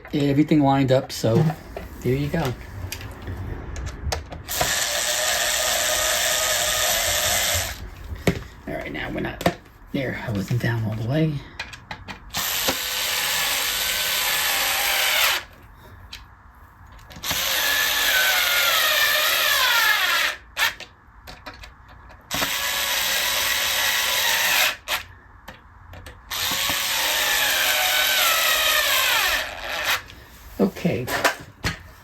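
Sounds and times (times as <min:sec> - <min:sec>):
cordless drill driving screws: 0:04.5 - 0:07.8, 0:12.3 - 0:15.6, 0:17.2 - 0:20.8, 0:22.3 - 0:25.1, 0:26.3 - 0:30.1.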